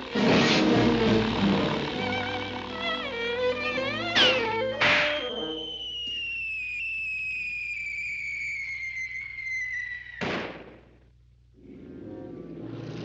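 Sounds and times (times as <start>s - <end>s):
falling cartoon whistle: 3.6s - 10.4s
loud bang: 10.2s - 10.8s.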